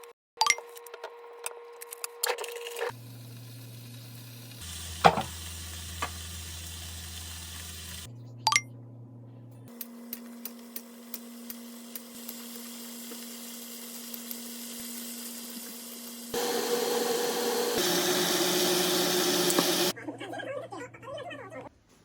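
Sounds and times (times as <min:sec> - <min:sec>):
appliance motor humming: 0:16.4 - 0:19.9
loud whirring motor: 0:16.4 - 0:19.9.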